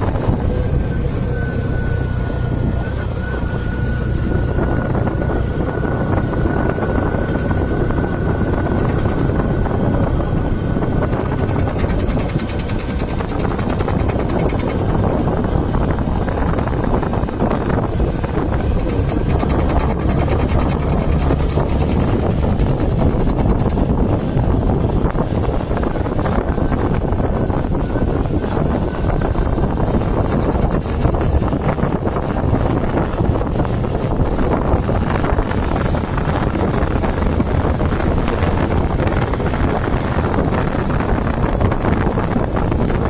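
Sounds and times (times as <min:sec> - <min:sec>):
thin steady whine: 0:00.0 - 0:42.9
motorcycle engine running: 0:00.0 - 0:43.0
fast ticking: 0:07.1 - 0:07.9, 0:08.6 - 0:09.4, 0:11.1 - 0:15.4, 0:18.5 - 0:23.8.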